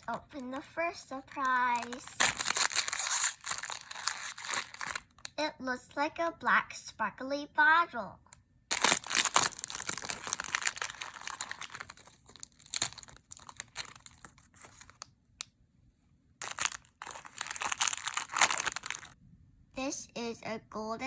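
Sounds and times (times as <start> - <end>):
plastic packaging tearing and crinkling: 1.2 - 5.2, 8.7 - 15.1, 16.4 - 19.2.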